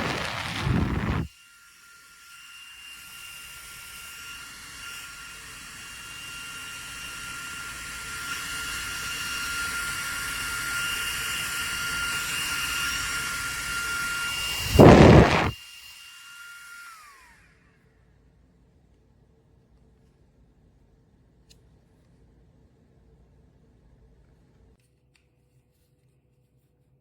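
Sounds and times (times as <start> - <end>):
portable fan motor whine: 0.0 - 17.8.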